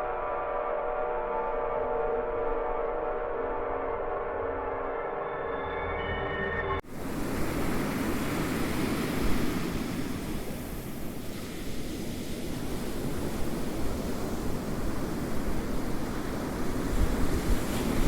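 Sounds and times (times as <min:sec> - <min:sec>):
ocean waves washing: 0:06.8 - 0:18.0.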